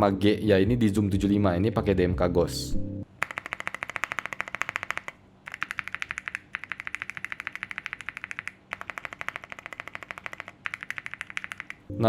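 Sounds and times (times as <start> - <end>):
mechanical keyboard typing: 3.2 - 11.9.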